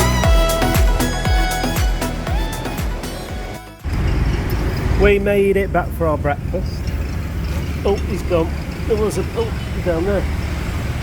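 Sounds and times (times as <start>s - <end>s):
kick drum beat: 0.0s - 3.8s
sustained pitched notes: 0.0s - 4.7s.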